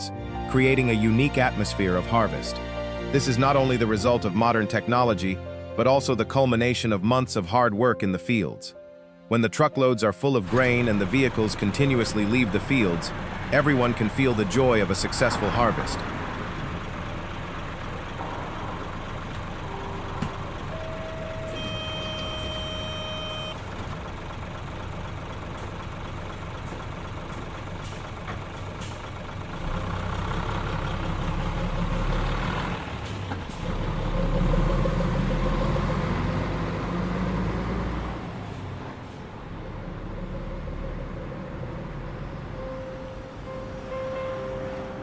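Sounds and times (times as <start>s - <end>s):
diesel farm machinery running: 0.0s - 7.5s, 10.4s - 45.0s.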